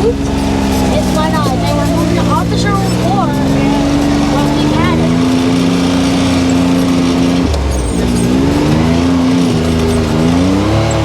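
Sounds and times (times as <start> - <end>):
turbocharged engine running: 0.0 - 11.0.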